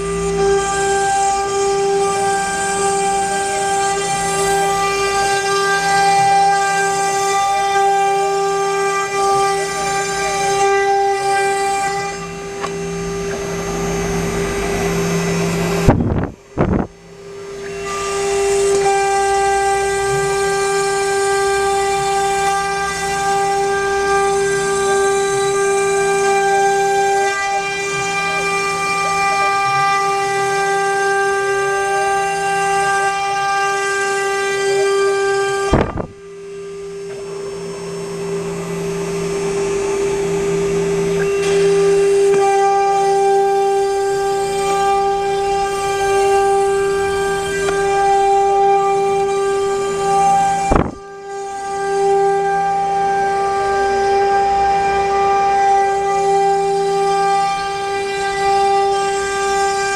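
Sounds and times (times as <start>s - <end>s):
router spindle whining: 0.0s - 59.9s
brief sharp disturbance: 35.7s - 36.2s.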